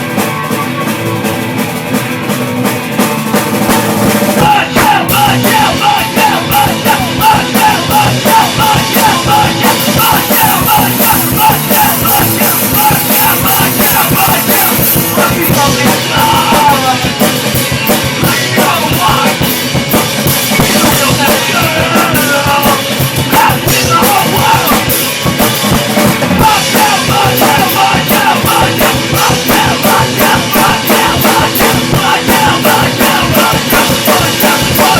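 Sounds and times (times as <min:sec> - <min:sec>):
drum kit: 0:00.0 - 0:34.9
rock band playing: 0:00.0 - 0:34.9.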